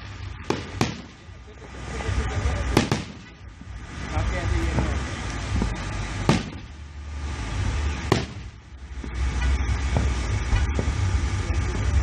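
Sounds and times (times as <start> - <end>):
low rumble: 0.0 - 12.0
faint firework pops: 0.4 - 1.2, 2.7 - 3.4, 6.3 - 6.6
firework bang: 0.4 - 1.4, 2.7 - 3.4, 5.6 - 6.7, 8.0 - 8.6.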